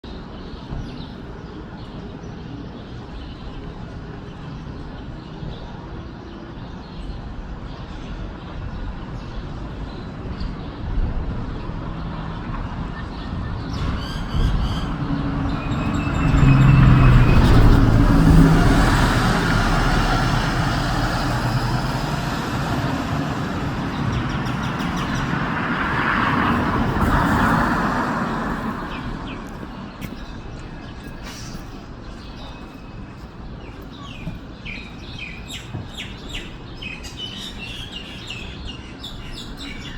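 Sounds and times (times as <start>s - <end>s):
road traffic noise: 0.0s - 39.9s
vehicle passing close: 13.7s - 30.0s.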